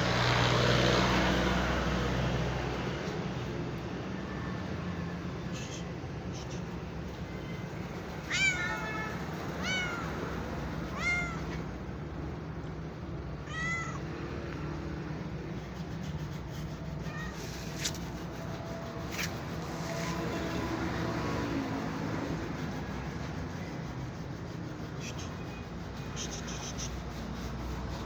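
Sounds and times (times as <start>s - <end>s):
cat meowing: 8.2s - 10.3s, 10.9s - 11.7s, 13.4s - 14.2s, 17.0s - 17.8s.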